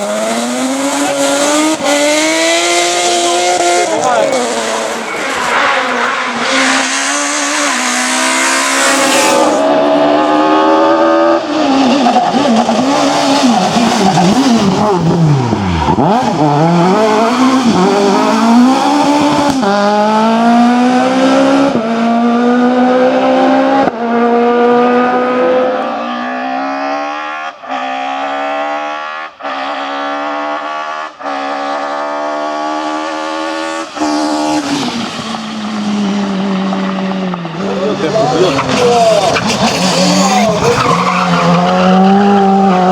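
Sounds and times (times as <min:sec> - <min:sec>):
rally car engine accelerating: 0:00.0 - 0:42.9.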